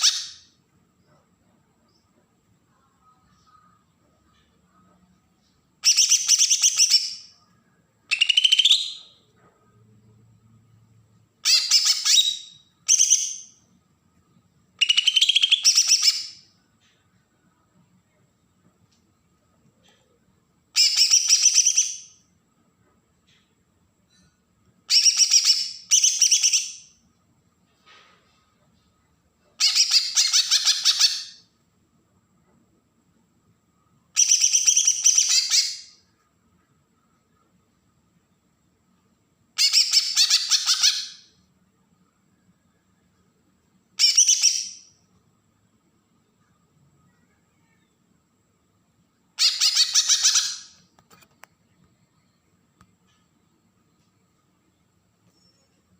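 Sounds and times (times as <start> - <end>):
bird harsh chattering song: 8.1 - 9.2, 14.8 - 16.5, 24.9 - 26.9, 29.6 - 31.5, 34.2 - 36.0, 39.6 - 41.3, 44.0 - 44.9, 49.4 - 50.8.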